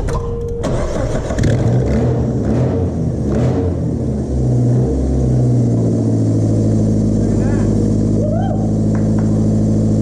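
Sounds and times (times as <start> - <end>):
car engine running unevenly: 3.8 - 10.0.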